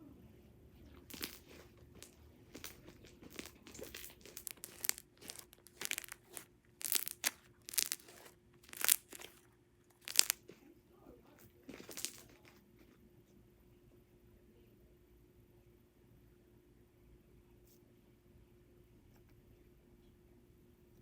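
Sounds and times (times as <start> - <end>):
slime squished by hand: 1.0 - 10.4.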